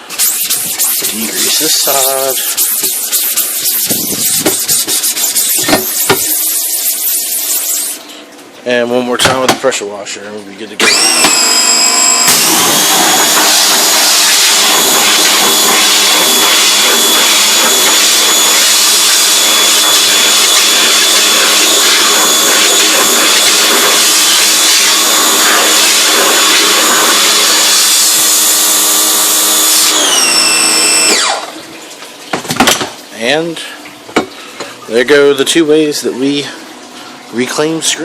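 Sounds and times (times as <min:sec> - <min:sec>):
pressure washer motor whine: 0:00.0 - 0:04.6, 0:10.8 - 0:31.7
water jet hissing on mesh: 0:00.0 - 0:08.1.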